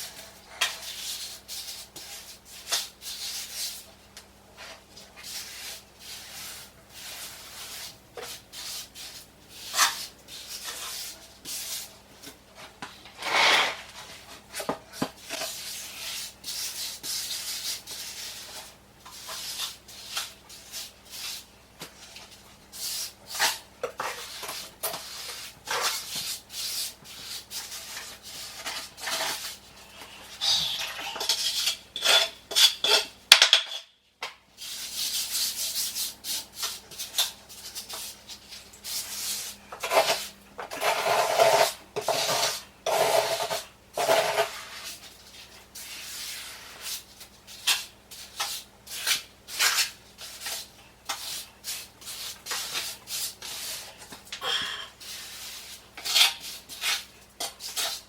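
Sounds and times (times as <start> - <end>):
trowel scraping mortar: 5.1 - 11.9, 13.2 - 33.1, 34.6 - 58.0.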